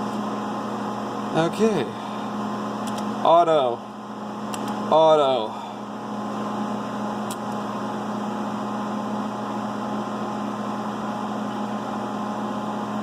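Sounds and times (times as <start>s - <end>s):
machining center humming: 0.0s - 13.0s.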